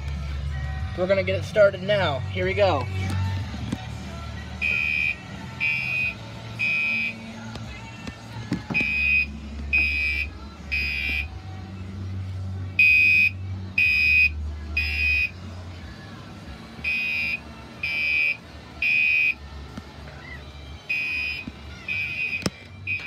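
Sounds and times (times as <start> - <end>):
fire alarm pulsing tone: 4.6 - 7.2, 8.8 - 11.3, 12.8 - 15.3, 16.8 - 19.4, 20.9 - 23.0.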